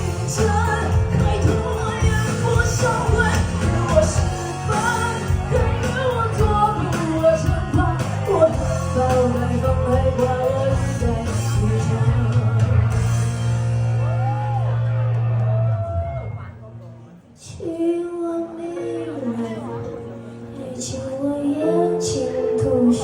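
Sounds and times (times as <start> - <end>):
person singing wordless vocals: 0.0 - 12.8, 17.6 - 23.0
live rock band: 0.0 - 16.2.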